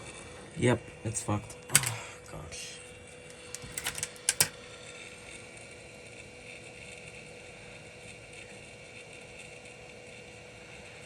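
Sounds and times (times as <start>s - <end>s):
hot-air station hissing: 1.2s - 4.6s
sharp clicks: 1.6s - 2.0s, 3.3s - 4.6s.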